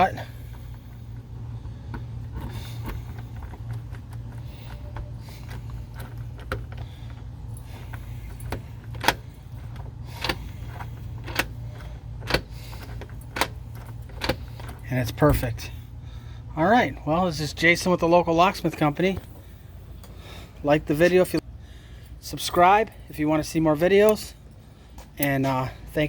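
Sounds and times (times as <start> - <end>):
steady low hum: 0.0 - 26.0
key clicking and rattling in lock: 1.9 - 15.6.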